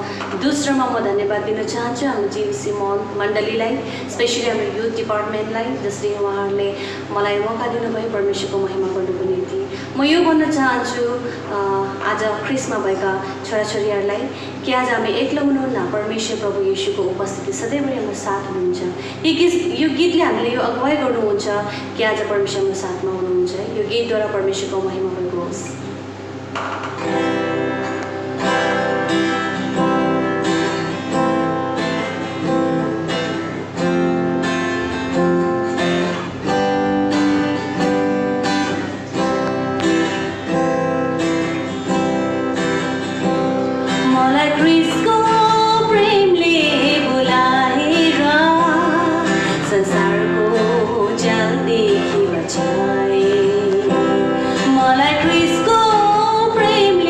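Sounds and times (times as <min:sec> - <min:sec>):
strummed acoustic guitar: 0:26.0 - 0:57.0
woman singing: 0:43.9 - 0:57.0.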